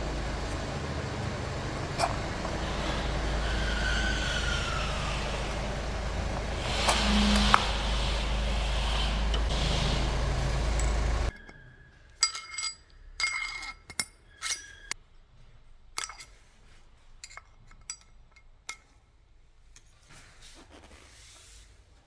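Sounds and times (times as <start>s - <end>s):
metal tools clinking: 10.8s - 15.0s, 16.0s - 16.4s, 17.2s - 19.0s.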